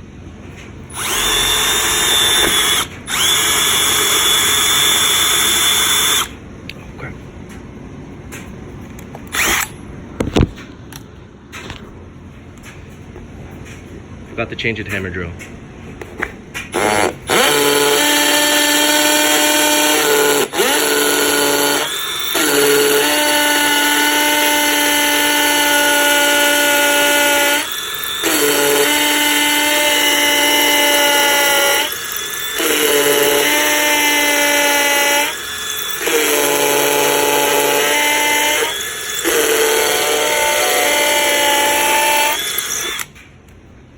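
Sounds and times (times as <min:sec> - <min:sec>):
hammer drill boring into concrete: 0:00.9 - 0:06.4, 0:09.3 - 0:09.8, 0:16.7 - 0:43.2.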